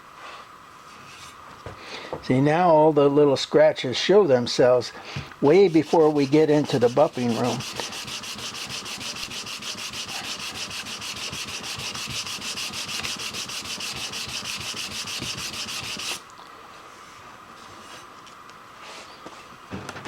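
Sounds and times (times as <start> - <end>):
faint background noise: 0.0 - 20.0
sandpaper rasping on metal plate: 5.5 - 16.2.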